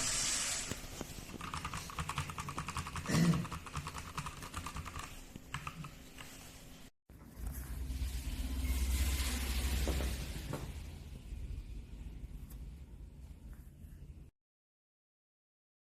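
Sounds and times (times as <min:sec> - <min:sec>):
rapid typing on mechanical keyboard: 0:01.2 - 0:06.3.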